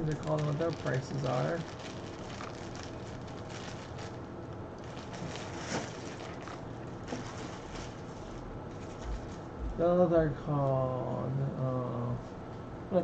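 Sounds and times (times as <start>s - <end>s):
low steady background noise: 0.0s - 13.0s.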